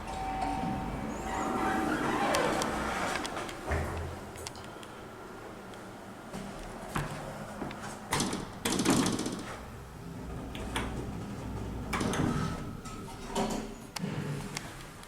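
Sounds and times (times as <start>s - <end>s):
lift doors sliding: 0.0s - 4.5s, 7.4s - 14.7s.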